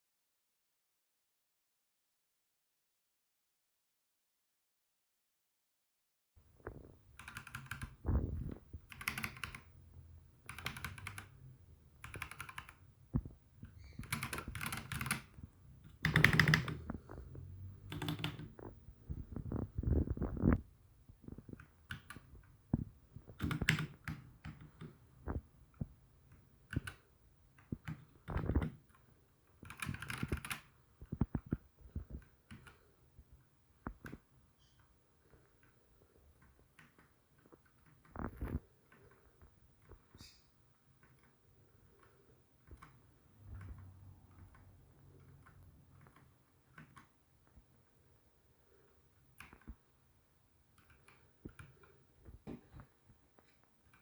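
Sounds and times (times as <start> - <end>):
mechanical keyboard typing: 7.1 - 20.6, 21.4 - 32.9, 41.0 - 47.2, 49.2 - 49.8, 50.6 - 52.0.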